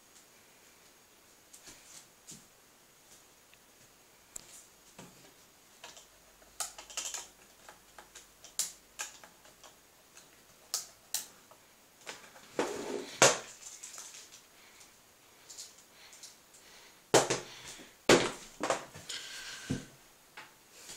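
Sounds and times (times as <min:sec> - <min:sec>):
airsoft guns clicking and knocking: 0:05.8 - 0:12.4.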